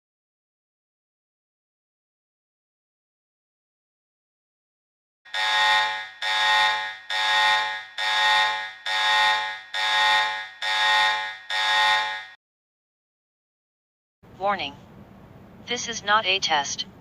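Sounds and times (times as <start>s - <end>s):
harsh buzzing alarm tone: 5.3s - 12.4s.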